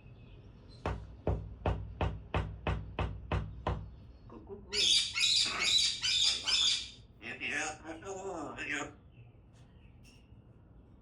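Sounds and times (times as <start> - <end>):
knocking on a door: 0.8 - 4.0
parrot squawking: 4.7 - 8.8.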